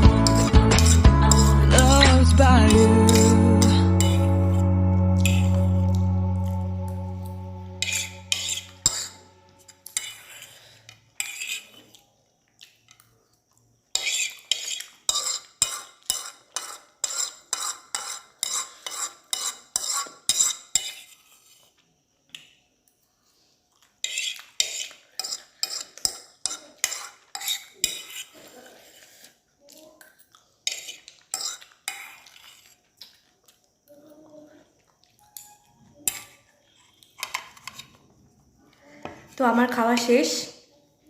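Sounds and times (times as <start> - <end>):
spoon scraping a plate: 0.0 - 4.6, 5.2 - 5.6, 7.8 - 12.0, 13.9 - 21.8, 24.0 - 29.4, 30.6 - 32.8, 35.2 - 38.0
background music: 0.0 - 9.7.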